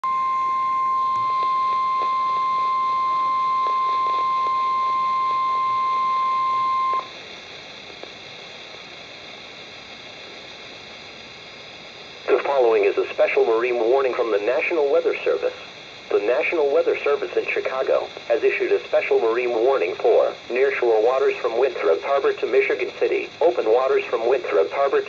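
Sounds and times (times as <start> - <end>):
steady alarm beep: 0.0 - 7.1
faint radio hiss: 6.5 - 25.0.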